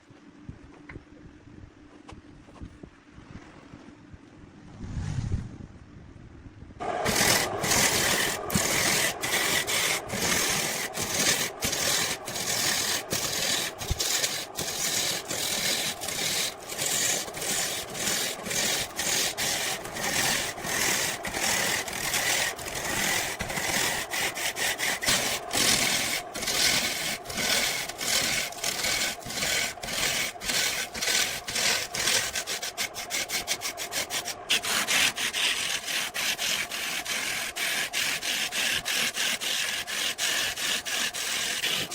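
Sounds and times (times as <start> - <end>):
hand tool rasping wood: 7.0 - 41.9.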